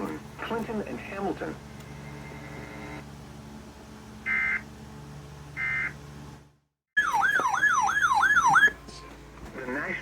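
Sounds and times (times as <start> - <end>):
warbling siren tone: 7.0 - 8.8.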